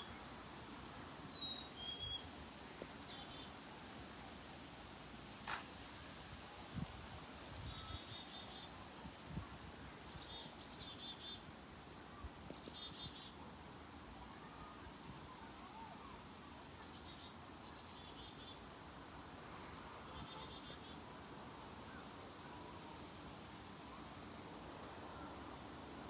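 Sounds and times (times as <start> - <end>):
songbird singing: 1.3 - 3.5, 7.4 - 8.7, 12.4 - 13.4, 14.3 - 18.6.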